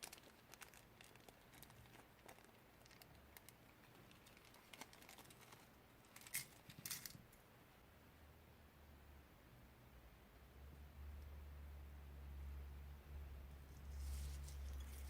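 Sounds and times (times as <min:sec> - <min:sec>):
packaging crinkling: 0:00.0 - 0:07.1, 0:14.0 - 0:15.0.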